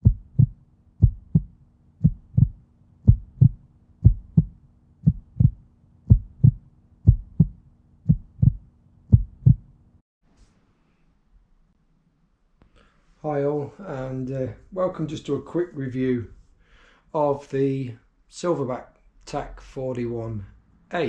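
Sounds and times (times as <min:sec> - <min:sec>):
heartbeat double thumps: 0:00.0 - 0:09.7
faint low hum: 0:00.0 - 0:10.0.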